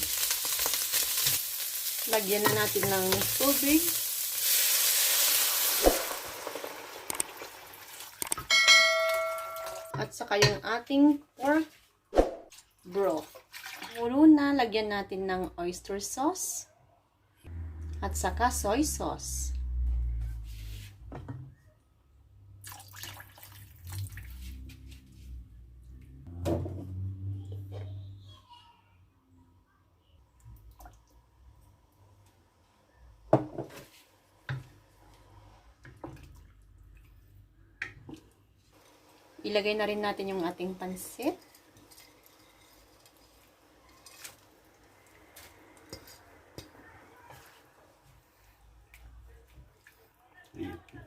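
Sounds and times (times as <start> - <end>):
liquid splashing into a pan: 0.0 - 8.5, 22.6 - 24.4, 41.3 - 44.8
utensil clinking against pan: 8.5 - 10.6.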